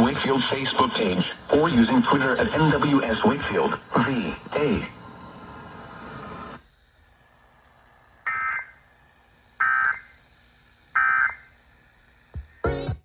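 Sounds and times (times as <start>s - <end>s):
warbling digital tone bursts: 8.2s - 8.9s, 10.9s - 11.5s.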